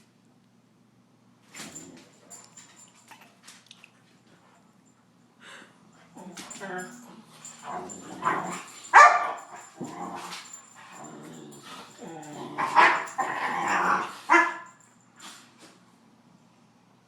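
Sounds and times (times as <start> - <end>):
dogs barking and growling: 6.1 - 14.8.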